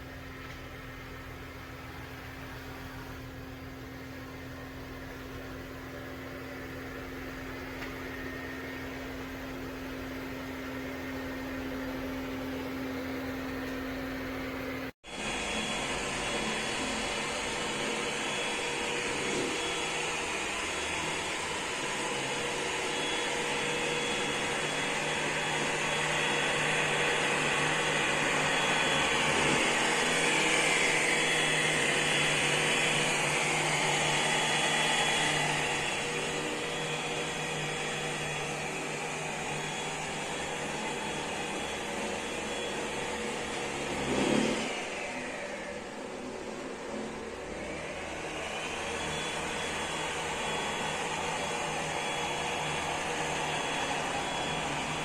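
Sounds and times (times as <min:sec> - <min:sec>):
robot vacuum whirring: 0:13.4 - 0:55.0.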